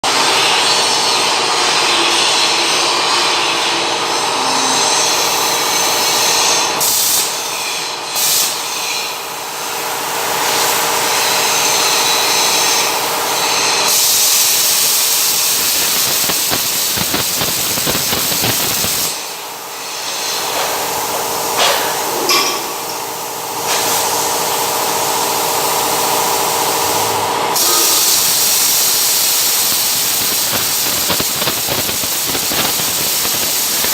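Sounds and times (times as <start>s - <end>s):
welding arc crackling hiss: 2.1s - 33.9s
steady hum: 25.9s - 33.9s.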